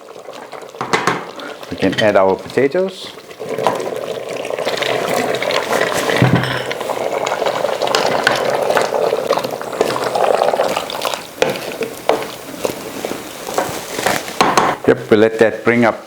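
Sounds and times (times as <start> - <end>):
curry sizzling in a pot: 0.0 - 15.6
spoon knocking against pot: 0.8 - 1.3, 14.4 - 14.8
spoon scraping through gravy: 1.3 - 14.4.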